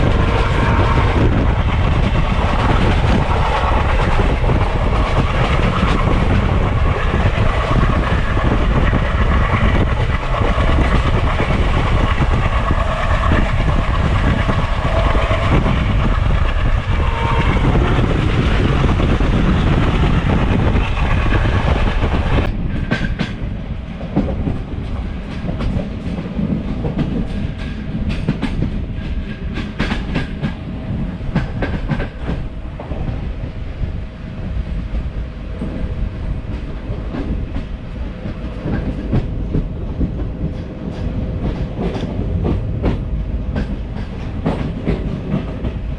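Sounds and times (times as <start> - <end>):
train wheel clicks on rails: 0.0 - 33.2, 36.4 - 45.9
train rumbling past: 0.0 - 45.9.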